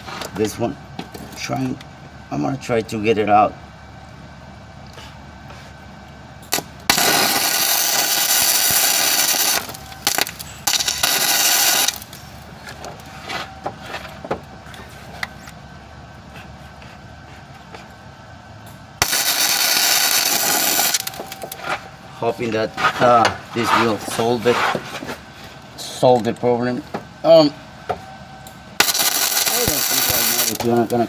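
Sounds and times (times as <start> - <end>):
welder arc crackling: 6.4 - 13.1, 19.0 - 24.5, 28.5 - 31.0.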